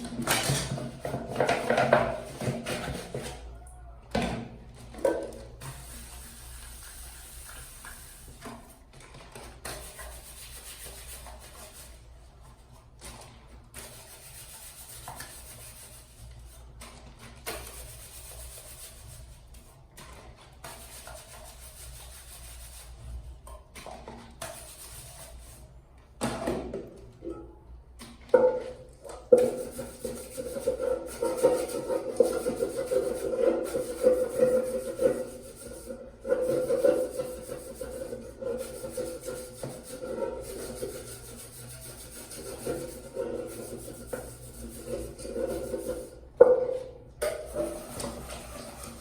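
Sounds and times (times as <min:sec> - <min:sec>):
scrubbing on a surface: 0:05.6 - 0:23.2, 0:23.8 - 0:25.7, 0:29.4 - 0:46.2, 0:47.5 - 0:49.0.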